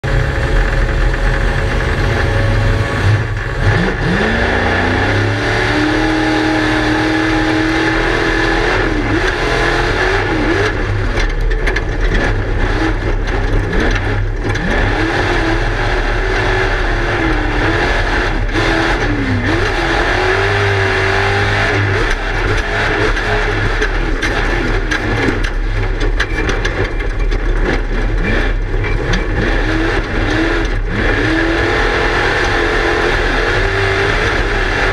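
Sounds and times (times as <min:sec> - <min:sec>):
race car engine revving: 0:00.0 - 0:34.9
knocks and rattles: 0:08.2 - 0:16.7, 0:21.6 - 0:32.7.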